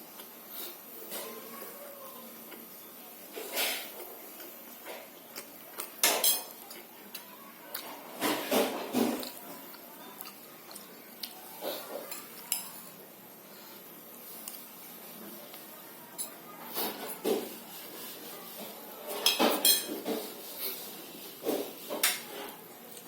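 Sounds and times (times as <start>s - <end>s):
spoon clinking on a plate: 6.0s - 6.6s, 19.2s - 20.1s.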